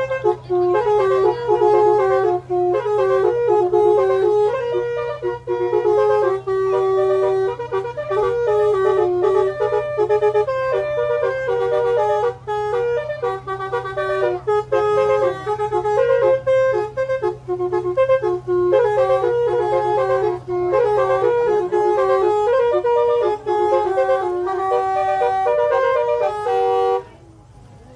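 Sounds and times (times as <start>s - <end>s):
electric bus horn tune: 0.0s - 27.6s
steady low hum: 0.0s - 27.9s.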